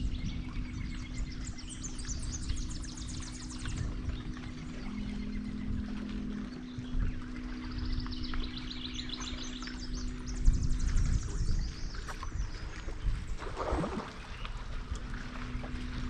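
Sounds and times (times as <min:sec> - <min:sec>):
boat low hum: 0:00.0 - 0:16.0
wind and water rumble: 0:00.0 - 0:16.0.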